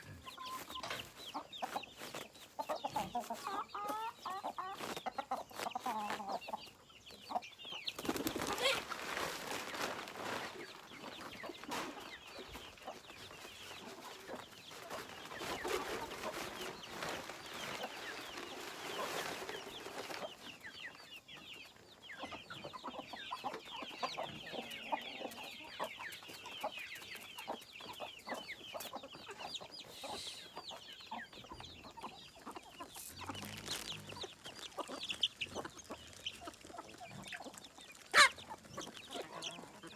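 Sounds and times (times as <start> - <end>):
chickens clucking: 0.0 - 39.9
rustling: 8.0 - 20.6, 33.0 - 34.6.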